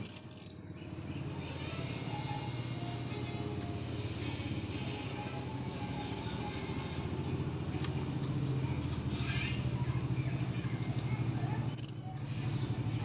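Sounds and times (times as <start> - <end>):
shrill parrot chirp: 0.0 - 0.8, 11.8 - 12.2
low pulsing engine hum: 0.0 - 13.0.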